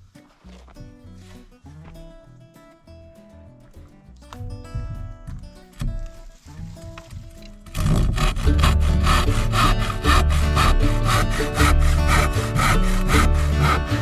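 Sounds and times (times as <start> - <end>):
rhythmic scraping strokes: 3.8 - 14.0
music with steady beat: 7.2 - 14.0.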